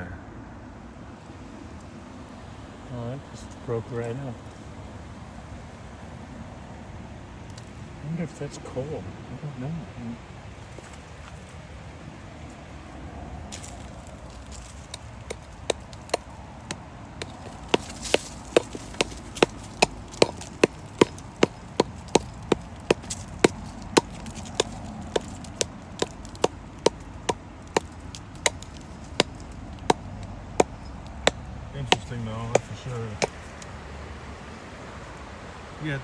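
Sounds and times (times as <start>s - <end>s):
digging tool striking clay and rock: 13.5s - 33.7s.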